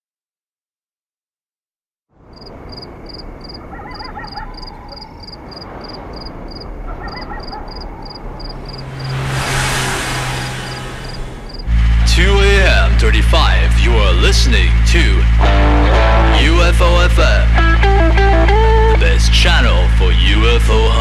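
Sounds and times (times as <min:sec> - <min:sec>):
cricket chirping: 0:02.3 - 0:11.7
low hum: 0:07.8 - 0:16.5.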